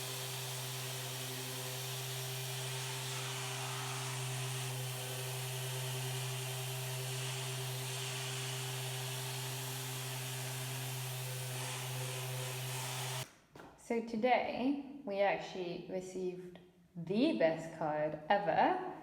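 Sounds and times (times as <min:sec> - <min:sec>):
motor-like hum: 0:00.0 - 0:13.2.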